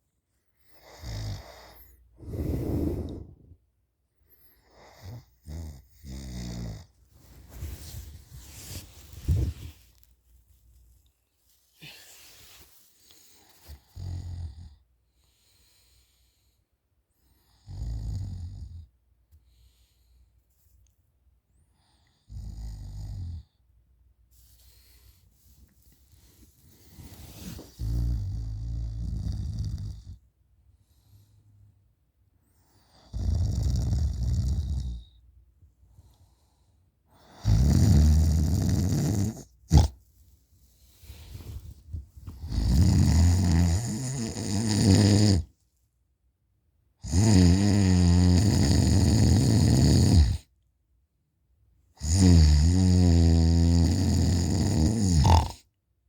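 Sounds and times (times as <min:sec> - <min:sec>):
person snoring loudly: 0:00.9 - 0:03.6, 0:37.4 - 0:39.9, 0:42.4 - 0:45.5, 0:47.0 - 0:50.4, 0:52.0 - 0:55.6
soft breathing: 0:01.4 - 0:04.8, 0:07.0 - 0:10.4, 0:11.5 - 0:14.0, 0:19.4 - 0:20.8, 0:24.3 - 0:28.0, 0:30.7 - 0:31.8, 0:35.8 - 0:37.3, 0:40.1 - 0:42.6.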